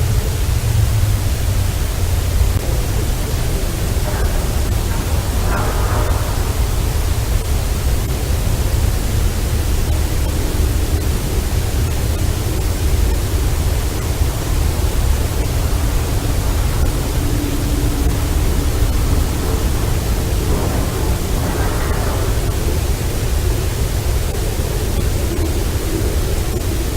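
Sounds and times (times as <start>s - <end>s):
steady loud hiss: 0.0s - 26.9s
low rumble: 0.2s - 9.6s, 11.8s - 25.4s
faint low drawn-out tone: 12.1s - 25.4s.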